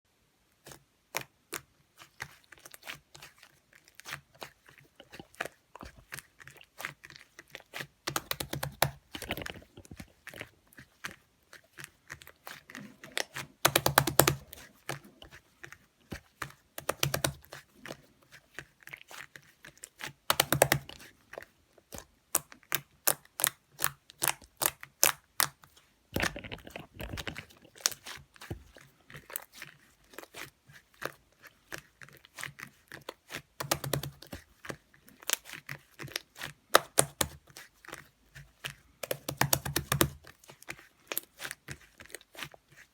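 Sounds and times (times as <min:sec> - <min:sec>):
air bubbles popping: 0:26.1 - 0:27.6.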